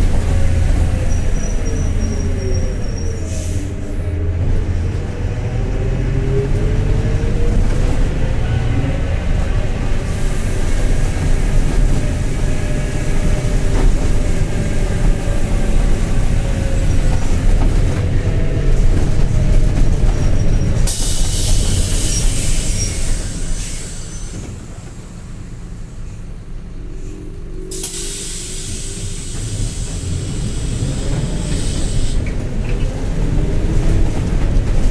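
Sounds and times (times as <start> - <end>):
diesel bus engine rumble: 0.0 - 34.9
compressed air hiss: 20.9 - 24.3, 27.7 - 32.3.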